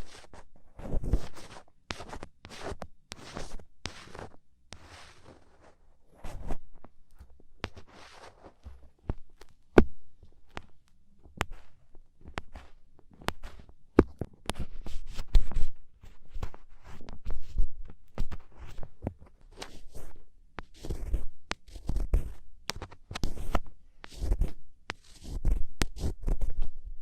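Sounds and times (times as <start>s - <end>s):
ear pick scraping earwax: 9.7s - 13.7s, 14.4s - 26.6s.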